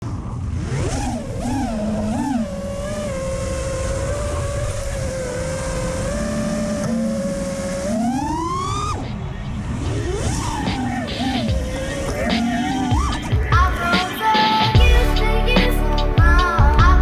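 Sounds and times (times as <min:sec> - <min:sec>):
quadcopter motors whining: 0:00.1 - 0:16.1.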